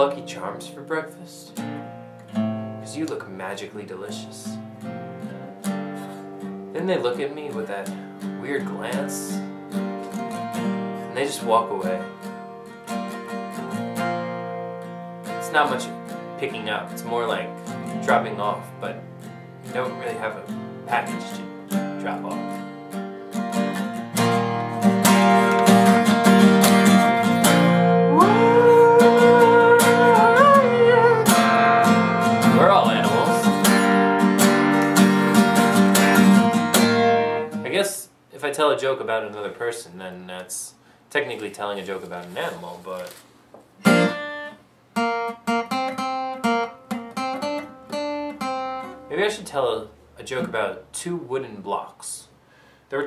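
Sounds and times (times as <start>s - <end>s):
acoustic guitar strumming: 0.0s - 38.0s, 43.7s - 50.9s
person singing long held note: 28.1s - 31.9s.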